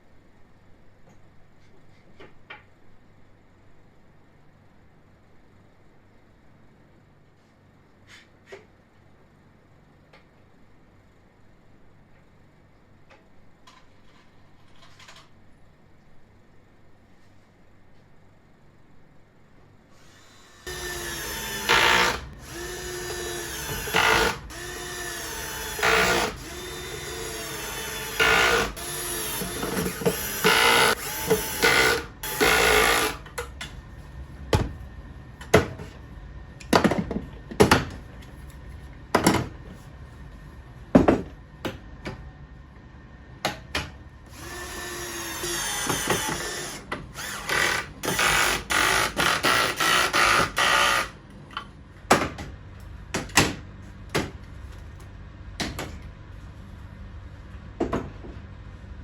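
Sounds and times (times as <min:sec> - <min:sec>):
power drill running: 0:20.0 - 0:33.2, 0:44.3 - 0:51.2.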